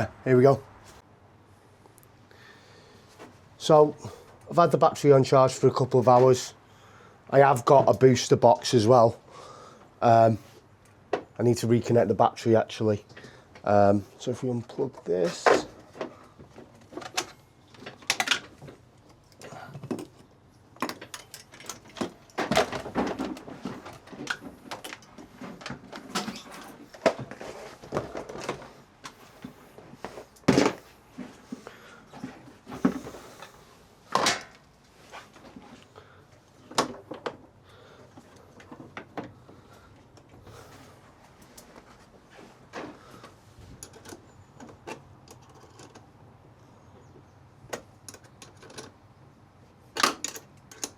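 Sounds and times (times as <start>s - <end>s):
clicks and clatters of tools: 14.9s - 31.4s, 42.8s - 46.2s, 47.7s - 49.0s, 50.0s - 50.9s.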